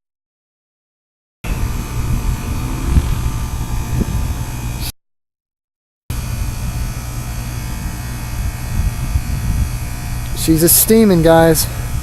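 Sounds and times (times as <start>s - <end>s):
heat pump hum and rumble: 1.5s - 4.9s, 6.1s - 12.0s.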